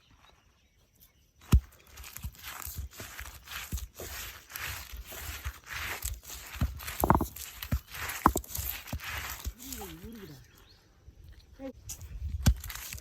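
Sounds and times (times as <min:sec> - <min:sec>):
leaves scraped on grinding stone: 0:01.8 - 0:10.3
knock on grinding stone: 0:06.9 - 0:07.5, 0:08.1 - 0:08.6.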